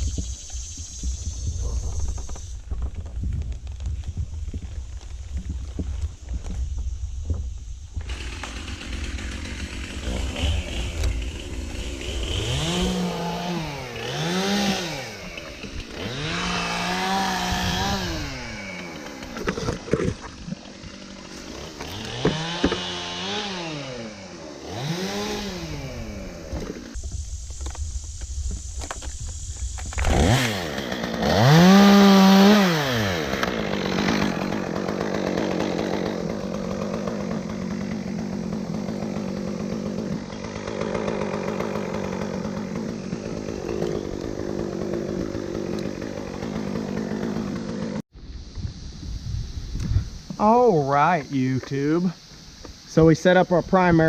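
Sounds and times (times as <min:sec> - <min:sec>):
chainsaw revving cutting wood: 0:08.0 - 0:27.0, 0:29.9 - 0:48.1.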